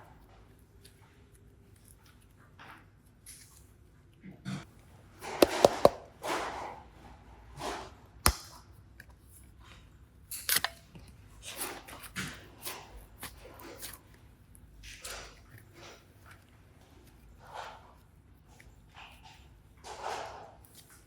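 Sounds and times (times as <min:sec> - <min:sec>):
clay squishing and rustling: 0:00.0 - 0:21.0.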